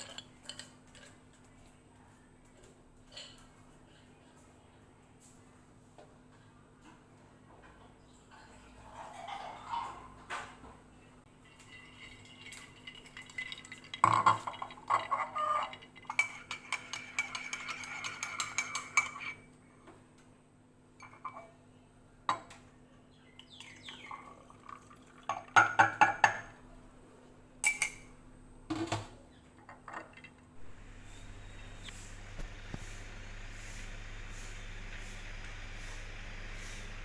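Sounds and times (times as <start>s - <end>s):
dishes and utensils clinking: 0.0s - 1.6s, 8.4s - 10.6s, 11.5s - 19.5s, 21.0s - 21.6s, 27.6s - 28.2s.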